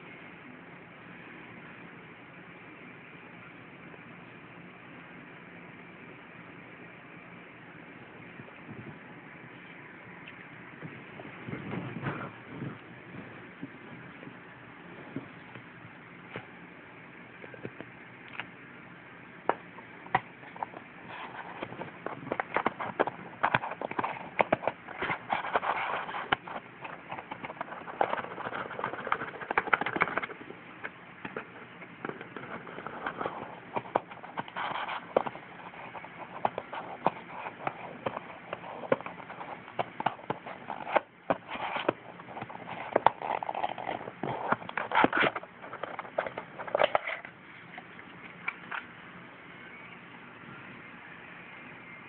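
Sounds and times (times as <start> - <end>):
hands handling packaging: 20.1 - 30.5, 31.3 - 48.9.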